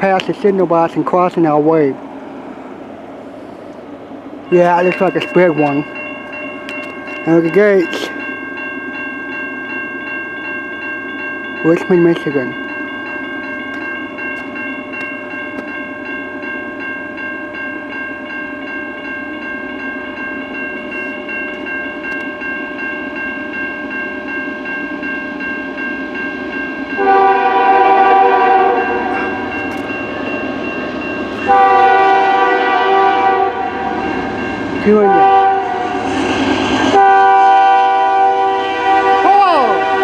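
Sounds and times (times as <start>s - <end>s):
freight train rumble: 0.0s - 40.0s
crossing bell ringing: 4.2s - 40.0s
locomotive air horn: 27.0s - 29.2s, 31.4s - 34.0s, 35.0s - 36.0s, 36.9s - 40.0s.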